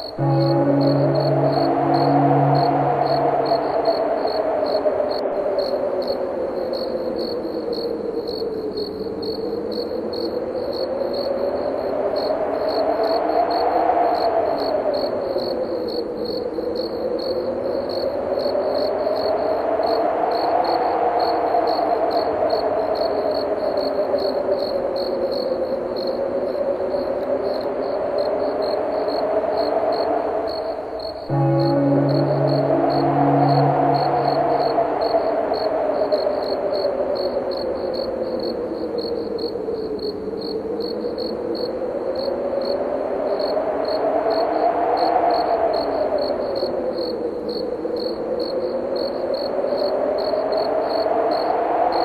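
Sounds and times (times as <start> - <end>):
crickets chirping: 0.0 - 52.0
hollow wind blowing: 0.0 - 52.0.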